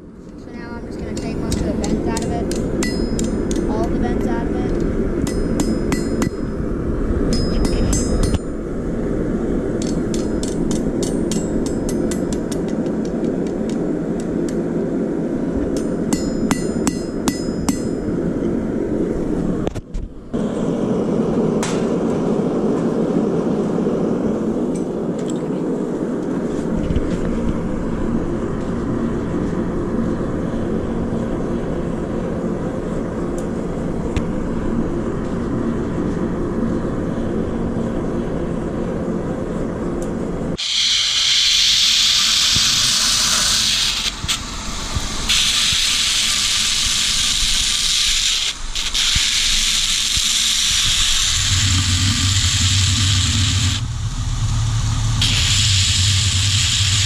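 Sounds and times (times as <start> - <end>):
forge rushing noise: 0.0 - 57.0
hammer ringing on anvil: 2.2 - 4.3, 5.2 - 6.5, 7.3 - 8.5, 15.8 - 18.1.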